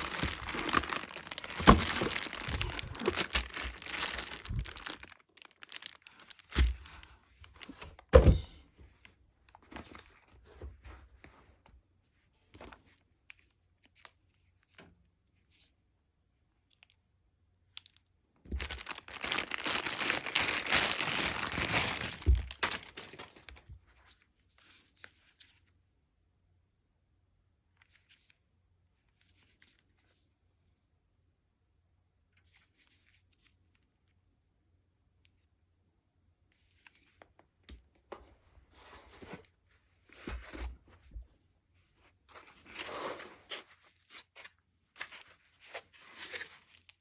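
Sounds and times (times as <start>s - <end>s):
packaging crinkling and tearing: 0.0s - 8.0s, 18.5s - 23.7s, 42.3s - 47.0s.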